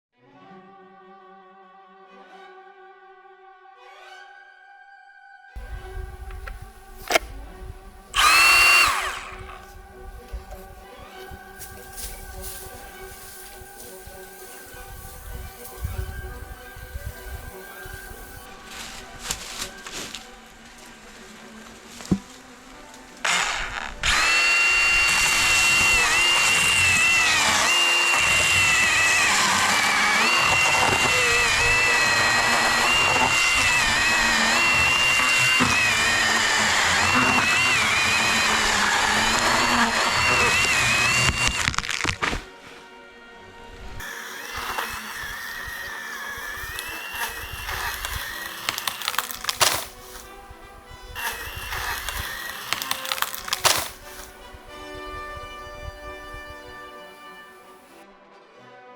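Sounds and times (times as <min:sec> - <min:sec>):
battery chainsaw motor whine: 0:05.6 - 0:18.5, 0:23.2 - 0:42.4, 0:44.0 - 0:58.0.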